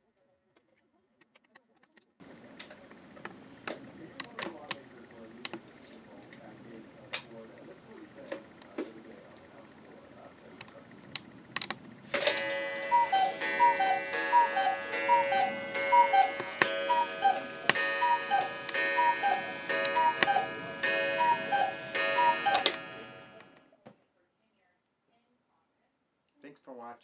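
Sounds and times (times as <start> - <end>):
sharp ticking clicks: 12.2 - 23.1
cuckoo clock call: 12.2 - 23.6
held chord: 12.2 - 23.6.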